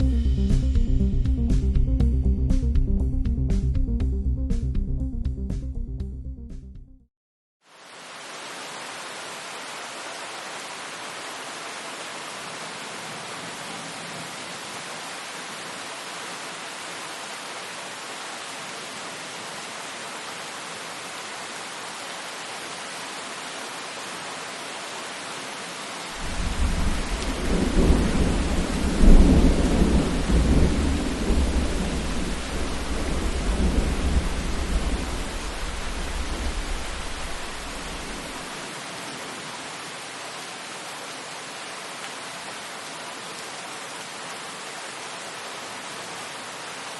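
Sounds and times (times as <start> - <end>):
steady rainfall: 7.6 - 46.9
deep rumble of thunder: 26.2 - 38.4.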